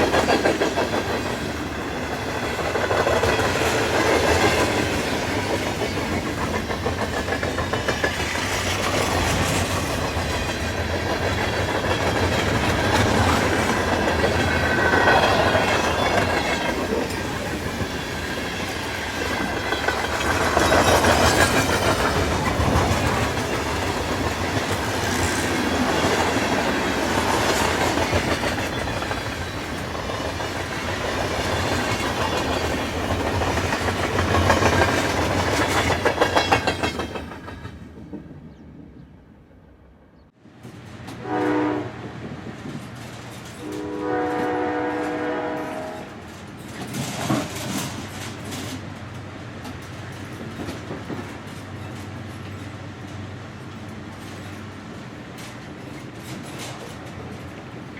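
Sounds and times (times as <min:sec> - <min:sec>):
train wheels clattering on rails: 0:00.0 - 0:38.6, 0:40.6 - 0:57.9
train rumble: 0:00.0 - 0:57.9
train horn: 0:41.1 - 0:42.2, 0:43.6 - 0:46.4.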